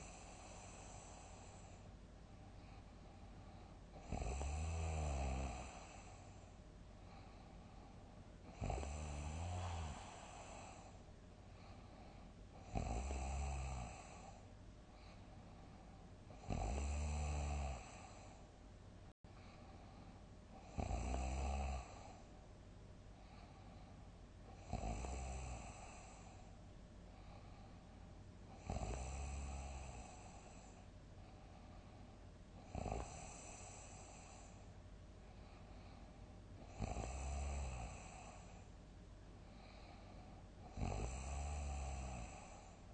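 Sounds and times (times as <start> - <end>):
quiet breathing: 0.0 - 42.9
person snoring: 3.9 - 6.5, 8.4 - 11.0, 12.6 - 14.4, 16.3 - 18.4, 20.6 - 22.2, 24.5 - 26.5, 28.5 - 30.8, 32.6 - 34.6, 36.6 - 38.7, 40.6 - 42.9.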